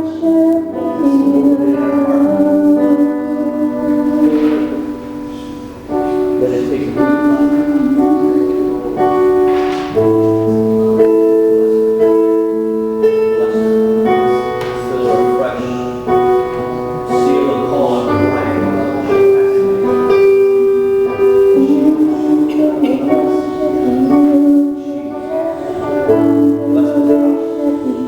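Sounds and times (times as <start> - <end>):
slow keyboard chords: 0.0 - 28.0.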